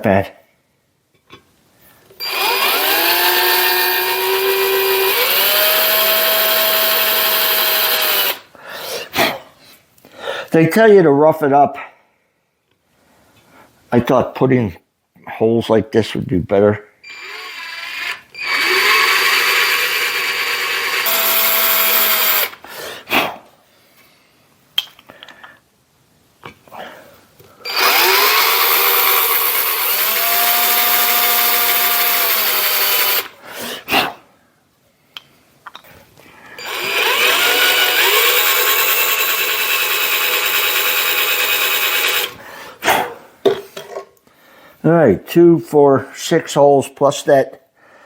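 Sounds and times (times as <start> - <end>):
power drill drilling into metal: 2.2 - 8.4, 17.1 - 22.6, 27.7 - 33.3, 36.6 - 42.4.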